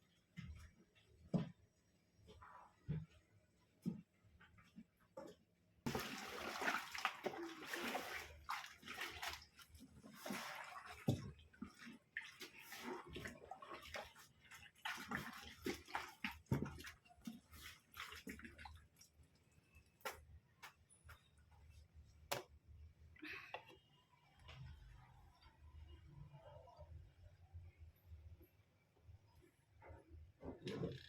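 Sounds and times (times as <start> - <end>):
water sloshing in washing machine: 5.9 - 20.3.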